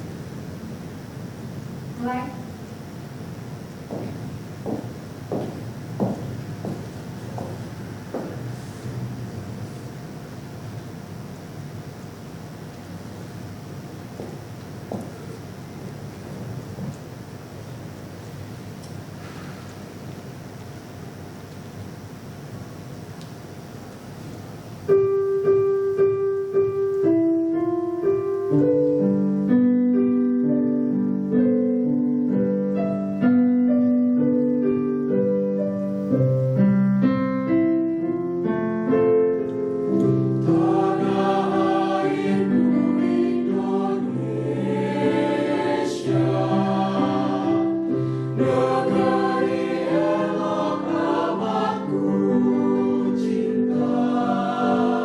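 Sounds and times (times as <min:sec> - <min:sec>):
choir singing in harmony: 0:39.9 - 0:55.0.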